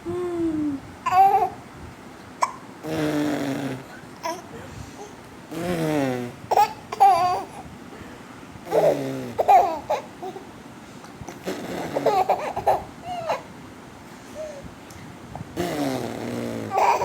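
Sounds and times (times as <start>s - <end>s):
baby babbling: 0.7s - 1.6s, 6.5s - 7.6s, 8.7s - 10.4s, 11.8s - 13.5s, 16.7s - 17.0s
baby squealing laughter: 16.7s - 17.0s.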